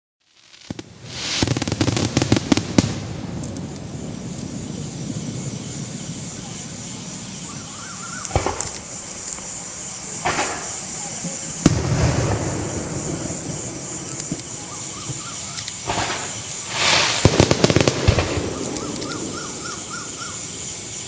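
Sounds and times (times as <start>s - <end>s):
fireworks bangs and cracks: 0.3s - 21.0s.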